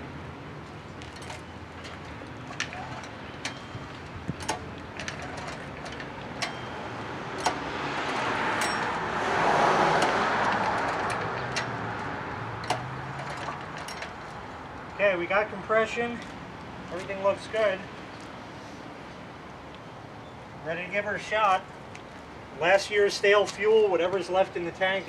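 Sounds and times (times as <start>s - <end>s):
car passing: 0.0s - 19.0s
generator switch clicks and knocks: 7.4s - 7.7s.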